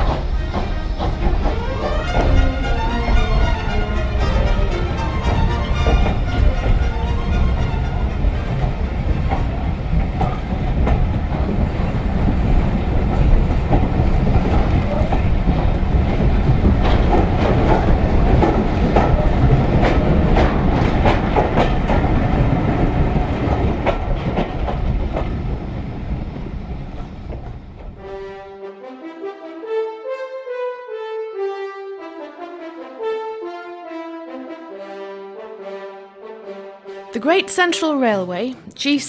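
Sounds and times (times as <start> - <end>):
train wheels clicking on rails: 0.0 - 28.0.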